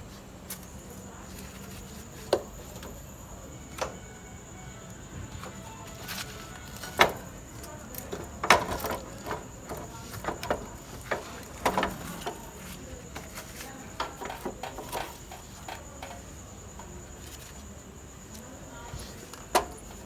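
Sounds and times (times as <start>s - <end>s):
metal parts knocking and clicking: 6.1s - 16.4s.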